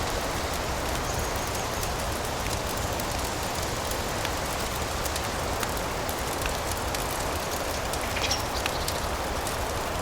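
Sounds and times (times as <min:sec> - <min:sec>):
steady rain hiss: 0:00.0 - 0:10.0.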